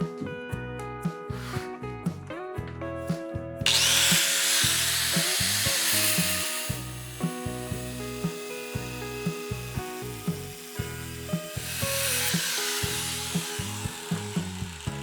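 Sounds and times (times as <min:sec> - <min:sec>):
hissing rasping noise: 0:03.7 - 0:15.0.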